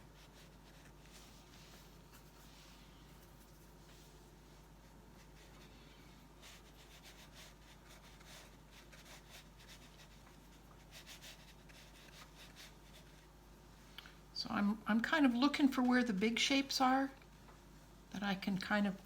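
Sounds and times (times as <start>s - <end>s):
brush strokes on paper: 0.0s - 13.3s
low steady hum: 0.0s - 19.0s.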